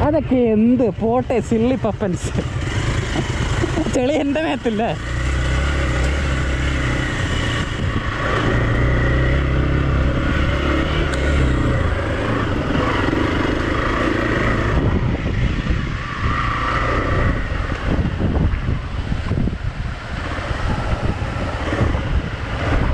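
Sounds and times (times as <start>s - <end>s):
motorcycle engine droning: 0.0s - 22.9s.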